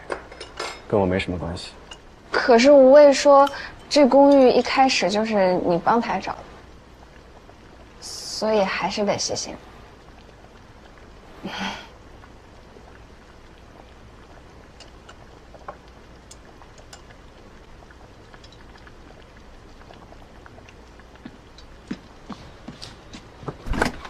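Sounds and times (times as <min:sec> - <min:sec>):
background hiss: 0:00.0 - 0:24.0
faint clicks and ticks: 0:12.1 - 0:22.3.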